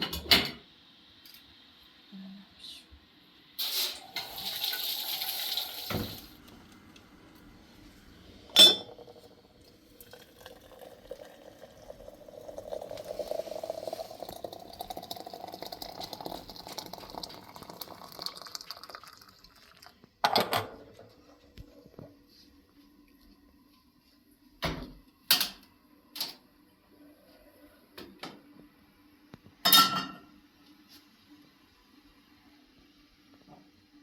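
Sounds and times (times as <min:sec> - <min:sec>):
water running: 0:03.6 - 0:07.5, 0:08.3 - 0:22.0
hissing burst of water: 0:12.8 - 0:14.4.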